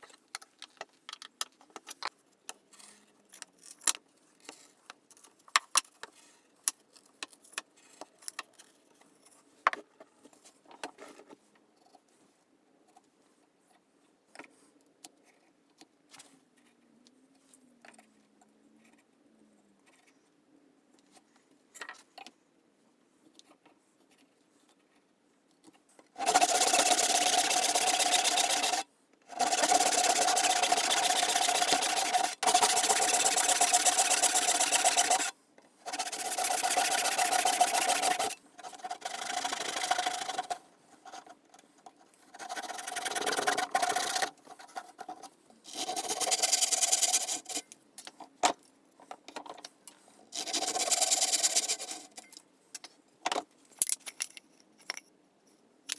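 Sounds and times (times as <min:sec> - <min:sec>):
hand saw cutting wood: 0:26.2 - 0:41.4, 0:42.3 - 0:47.6, 0:50.4 - 0:52.2.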